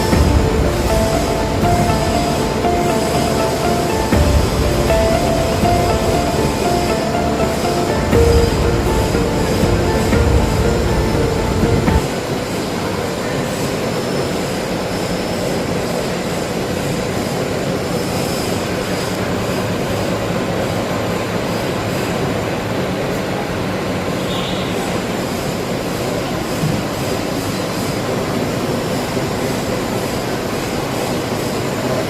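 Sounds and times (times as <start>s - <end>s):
machine whirring and humming: 0.0s - 24.2s.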